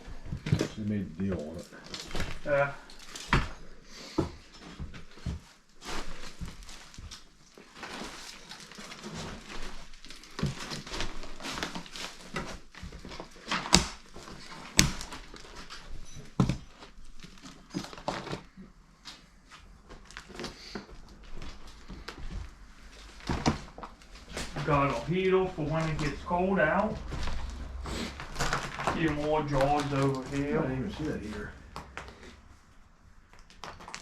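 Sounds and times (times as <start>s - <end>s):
footsteps over debris: 4.4s - 32.4s
knocks thuds and rustles: 20.0s - 24.9s.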